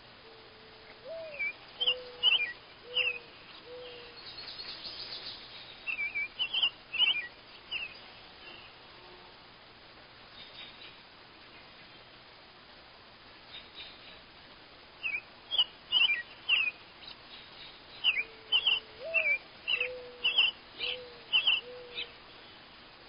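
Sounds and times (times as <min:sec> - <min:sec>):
bird cooing: 0:00.2 - 0:04.7, 0:18.0 - 0:22.2
buzzy bird trill: 0:01.1 - 0:08.8, 0:18.0 - 0:22.1
sharp high bird chirps: 0:05.9 - 0:08.0, 0:15.0 - 0:16.8, 0:18.0 - 0:22.1.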